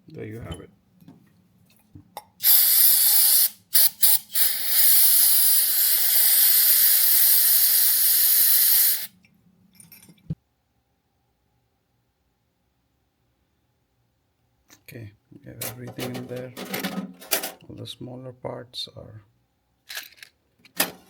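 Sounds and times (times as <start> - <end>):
pressurised spray hissing: 2.4 - 9.2.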